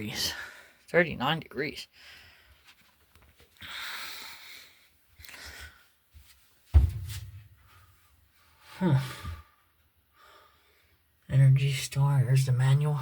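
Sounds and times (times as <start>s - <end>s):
heavy low thump: 6.8s - 7.6s.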